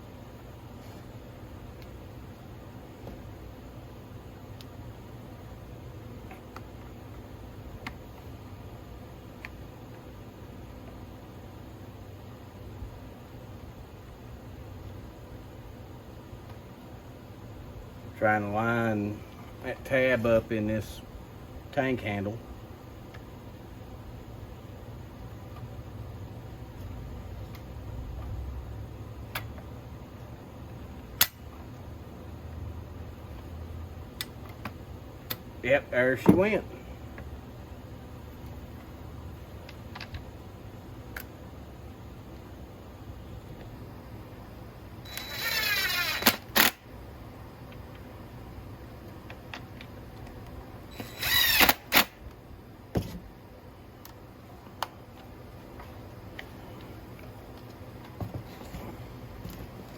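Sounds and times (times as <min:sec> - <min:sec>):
low steady hum: 0:00.0 - 0:59.9
power drill whine: 0:45.0 - 0:46.7, 0:50.9 - 0:52.1.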